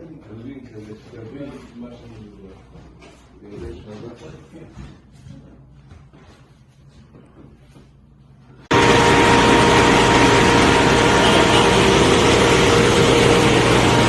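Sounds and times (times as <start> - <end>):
loud steady machine noise: 8.7 - 14.0.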